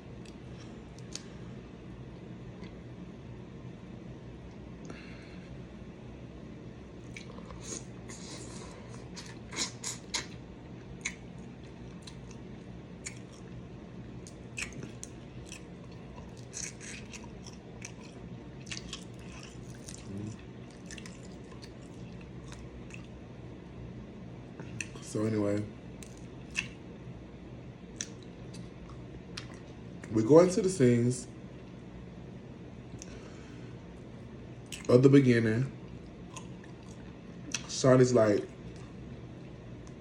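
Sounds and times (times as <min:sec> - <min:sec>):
wet chewing and lip-smacking: 0:07.0 - 0:23.2, 0:26.0 - 0:26.8, 0:27.9 - 0:30.1, 0:34.6 - 0:34.9, 0:35.8 - 0:37.7.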